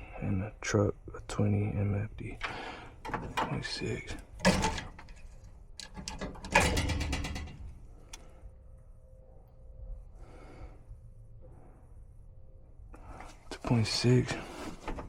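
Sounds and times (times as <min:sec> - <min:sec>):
faint scraping and handling: 0:14.2 - 0:15.0.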